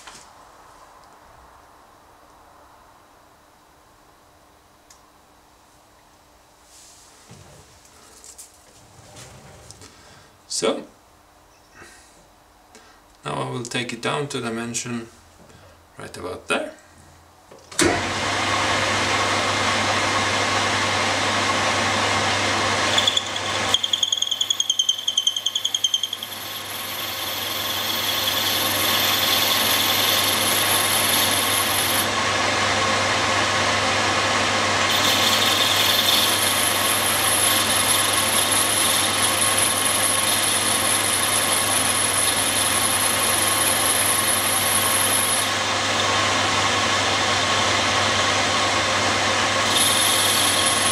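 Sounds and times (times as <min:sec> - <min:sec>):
lathe motor hum: 0:17.8 - 0:50.9
steady high whine: 0:19.1 - 0:50.9
high squeal of cutting tool: 0:22.8 - 0:32.1, 0:34.9 - 0:45.5, 0:49.7 - 0:50.9
cutting tool hiss: 0:22.9 - 0:32.1, 0:34.8 - 0:45.6, 0:49.6 - 0:50.9.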